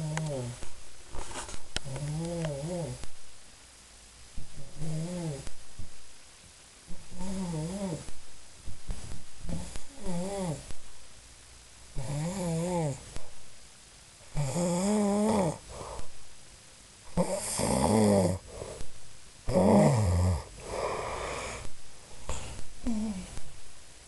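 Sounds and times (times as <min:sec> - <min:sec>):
man snoring: 0:00.0 - 0:00.6, 0:01.8 - 0:03.0, 0:04.6 - 0:05.5, 0:06.9 - 0:08.1, 0:09.5 - 0:10.7, 0:12.0 - 0:13.1, 0:14.3 - 0:16.0, 0:17.1 - 0:18.8, 0:19.5 - 0:21.7.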